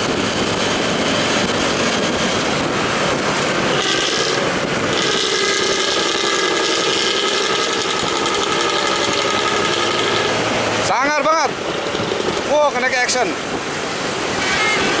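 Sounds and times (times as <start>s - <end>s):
bus exhaust growling: 0.0s - 15.0s
held horn tones: 3.7s - 10.8s.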